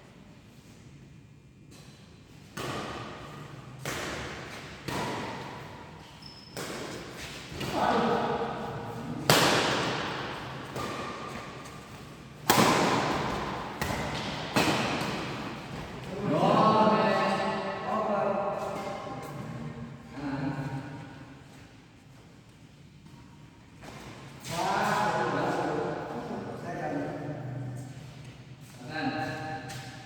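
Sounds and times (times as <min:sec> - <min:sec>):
rackets hitting shuttlecock: 0:01.8 - 0:08.5, 0:09.1 - 0:16.0.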